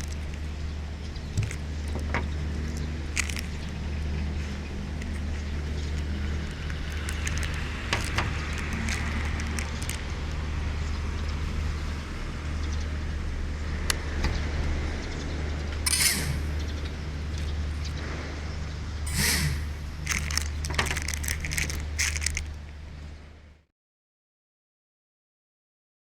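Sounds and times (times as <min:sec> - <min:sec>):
crackles and clicks: 0:00.0 - 0:10.4, 0:15.9 - 0:18.1, 0:19.6 - 0:22.8.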